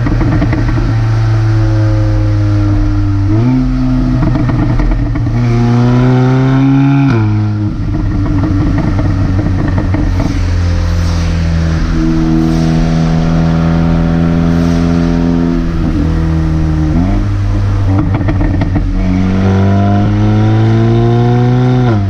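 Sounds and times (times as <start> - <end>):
car engine accelerating: 0.0 - 22.0
exhaust crackles and pops: 0.0 - 22.0.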